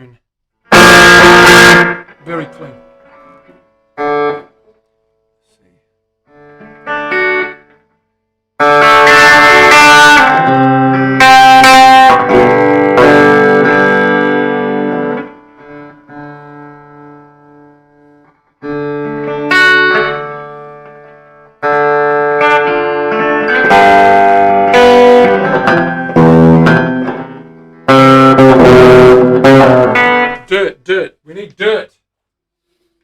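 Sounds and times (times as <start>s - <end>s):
clean electric guitar chords: 0.7s - 4.6s, 8.6s - 30.4s.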